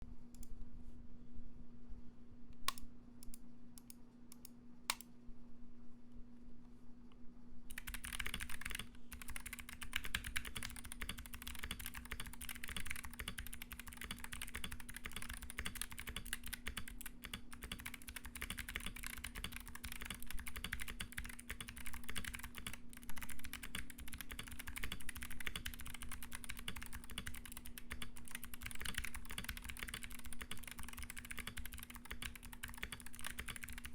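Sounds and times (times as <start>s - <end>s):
clicky mechanical keyboard typing: 7.7s - 33.9s.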